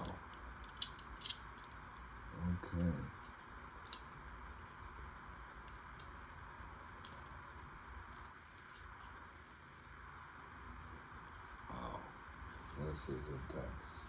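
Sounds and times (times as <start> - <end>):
plastic pieces clicking: 0.0 - 1.8, 3.2 - 4.1, 7.0 - 8.8
steady background hiss: 0.0 - 14.0.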